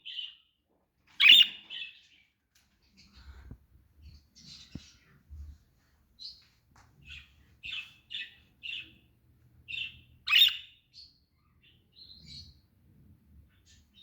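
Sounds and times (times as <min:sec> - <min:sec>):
budgerigars chirping: 0:01.2 - 0:02.1, 0:07.0 - 0:09.0, 0:09.6 - 0:12.6.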